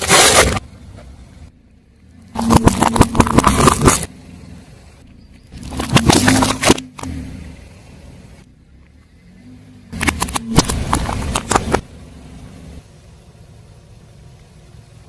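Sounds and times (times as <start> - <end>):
tyre crushing brittle objects: 0.0 - 0.6, 2.4 - 4.1, 5.6 - 7.1
car engine running low: 0.0 - 15.0.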